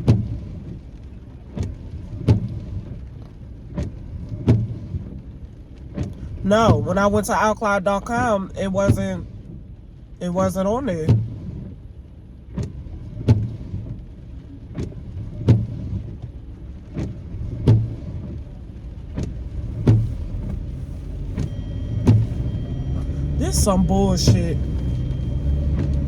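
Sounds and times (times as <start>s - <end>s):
car low rumble: 0.0s - 26.0s
windshield wipers knocking: 19.2s - 26.0s.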